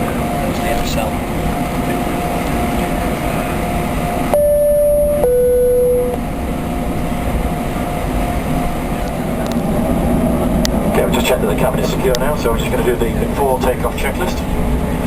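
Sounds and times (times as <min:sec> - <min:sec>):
airliner cabin noise with whine: 0:00.0 - 0:15.0
two-tone chime: 0:04.4 - 0:06.2.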